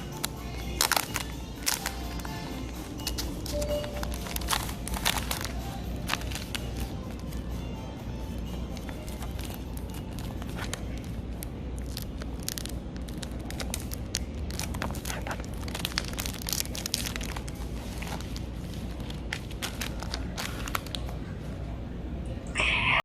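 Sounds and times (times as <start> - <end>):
packaging crinkling and rustling: 0.0 - 7.4, 8.7 - 21.3.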